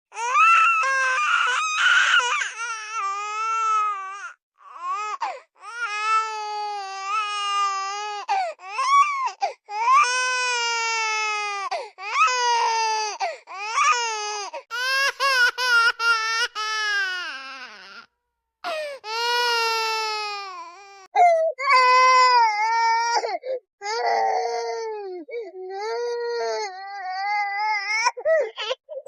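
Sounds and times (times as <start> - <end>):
baby crying: 0.1 - 29.0.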